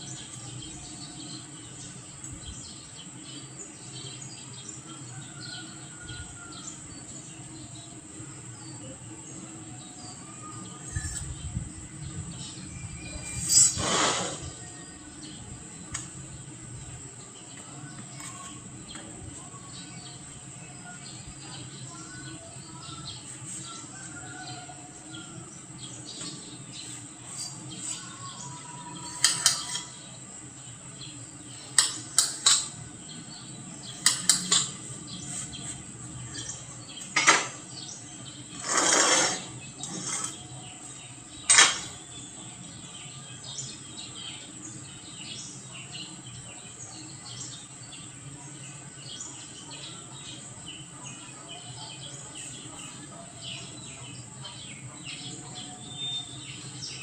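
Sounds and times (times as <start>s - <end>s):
brief scraping rush: 13.2s - 14.6s
metal tools clinking and knocking: 41.5s - 42.0s.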